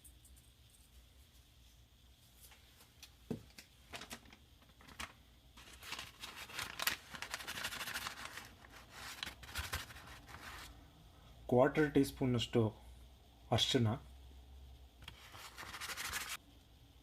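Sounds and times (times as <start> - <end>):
scratchy rustling and scraping: 4.8 - 10.7, 15.0 - 16.4.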